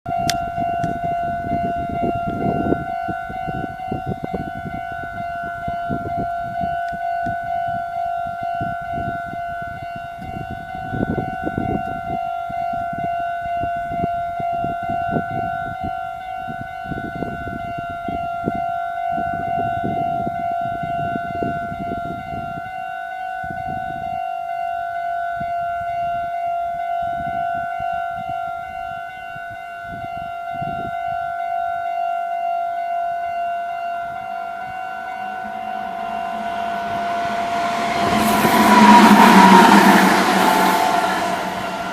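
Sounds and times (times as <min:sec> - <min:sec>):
level crossing alarm: 0:00.1 - 0:41.9
low rumbling: 0:34.1 - 0:41.9.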